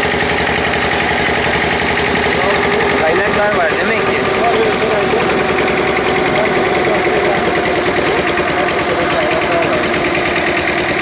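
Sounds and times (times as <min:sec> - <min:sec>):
engine droning: 0:00.0 - 0:11.0.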